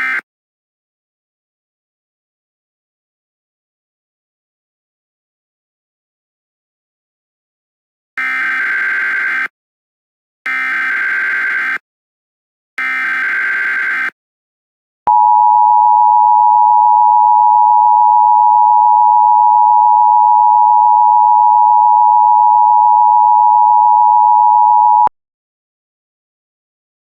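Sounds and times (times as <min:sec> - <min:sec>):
steady dual-tone alert signal: 0:12.8 - 0:14.2, 0:15.1 - 0:25.1.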